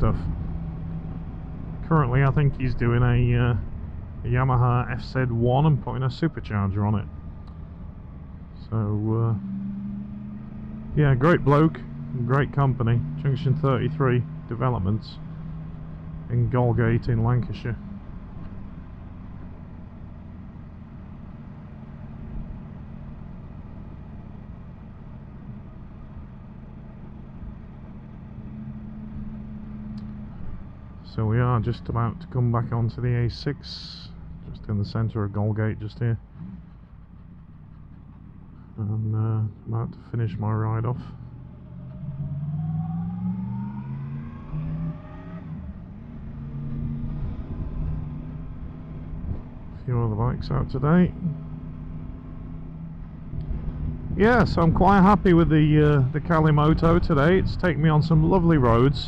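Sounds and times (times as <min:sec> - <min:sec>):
motorcycle engine whine: 0:00.0 - 0:59.0
road noise: 0:00.0 - 0:59.0
motorcycle engine running: 0:45.7 - 0:59.0.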